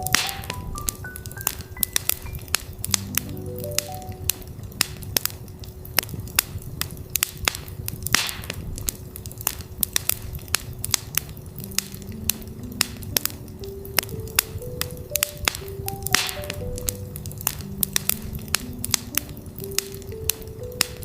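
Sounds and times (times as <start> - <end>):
soft rising notes: 0.0 - 5.2
campfire crackling and popping: 0.0 - 21.0
fire hiss: 0.0 - 21.0.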